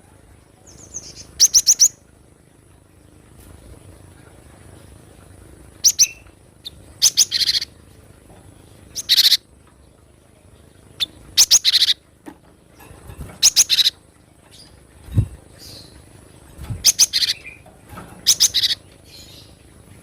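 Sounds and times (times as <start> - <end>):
bird high chirps: 0.7 - 2.0, 5.8 - 7.7, 8.9 - 9.4, 11.0 - 12.0, 13.4 - 14.0, 16.8 - 17.6, 18.2 - 19.5.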